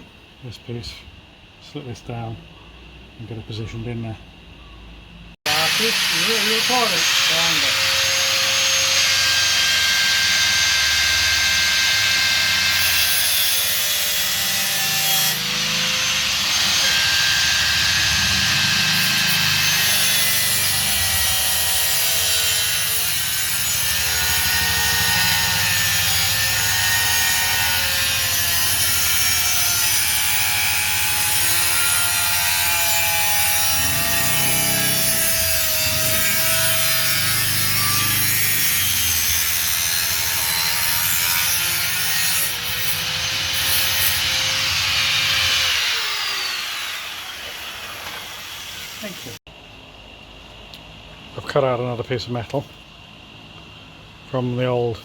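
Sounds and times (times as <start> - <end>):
tool rasping sheet steel: 5.5 - 49.4.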